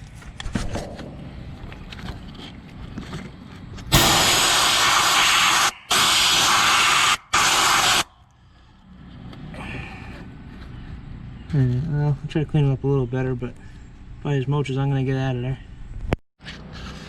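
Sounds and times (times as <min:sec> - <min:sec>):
compressed air blow gun blasts: 0:03.9 - 0:08.1.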